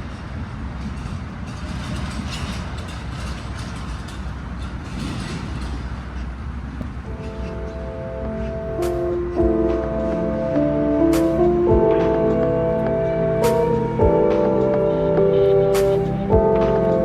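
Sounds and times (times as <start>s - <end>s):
low rumble of background noise: 0.0s - 17.0s
soft background music: 7.1s - 17.0s.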